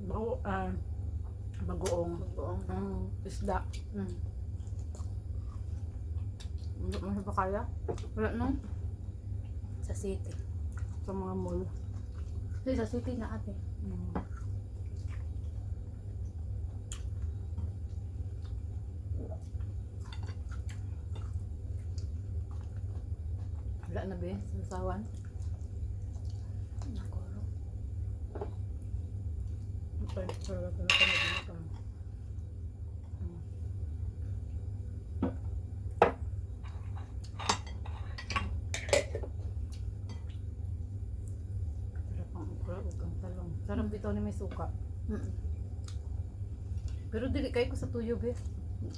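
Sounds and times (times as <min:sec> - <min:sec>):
steady low hum: 0:00.0 - 0:48.9
chewing mouth noises: 0:03.8 - 0:07.1, 0:10.3 - 0:12.7, 0:14.3 - 0:24.0, 0:25.0 - 0:27.2
plates and utensils clinking: 0:30.9 - 0:31.5.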